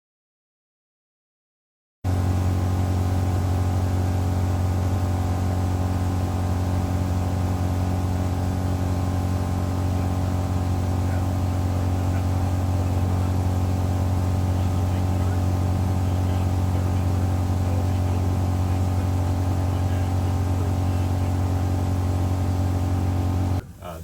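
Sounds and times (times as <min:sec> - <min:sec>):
boat engine droning: 0:02.1 - 0:24.0.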